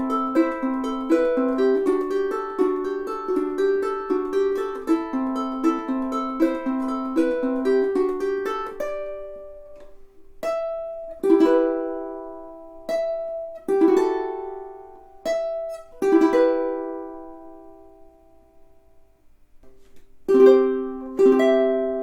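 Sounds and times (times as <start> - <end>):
ukulele playing: 0.0 - 22.0.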